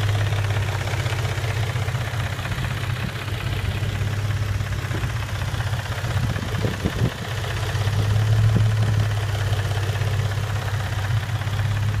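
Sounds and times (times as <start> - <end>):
car engine idling: 0.0 - 12.0
engine knocking: 0.0 - 12.0.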